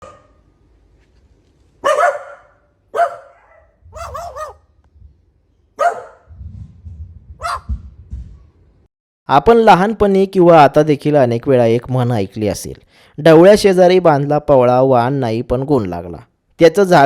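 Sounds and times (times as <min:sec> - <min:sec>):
dogs barking: 0:00.0 - 0:00.4, 0:01.8 - 0:04.7, 0:05.8 - 0:06.3, 0:07.4 - 0:07.8
bird imitating dog bark: 0:01.8 - 0:04.7, 0:05.8 - 0:06.3, 0:07.4 - 0:07.8.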